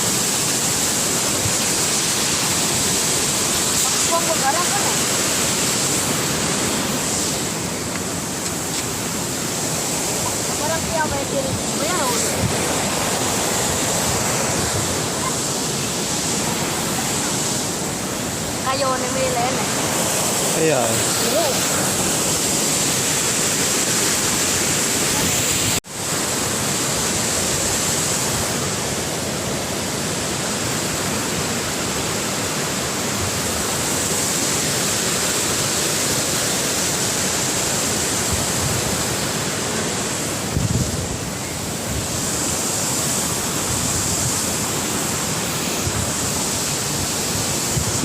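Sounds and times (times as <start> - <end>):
waterfall rushing: 0.0 - 48.0
wind rumble on microphone: 6.0 - 18.0, 40.3 - 48.0.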